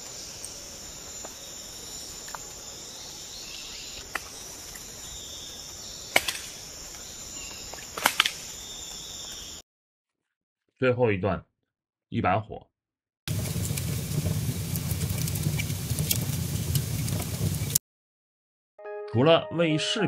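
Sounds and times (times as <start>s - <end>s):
insects chirring: 0.0s - 9.6s.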